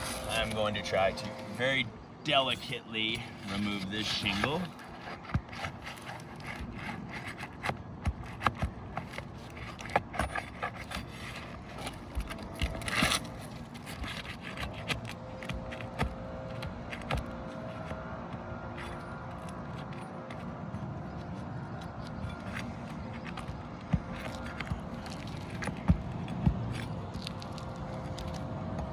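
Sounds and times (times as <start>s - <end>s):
pry bar scraping under shingles: 0.0s - 28.9s.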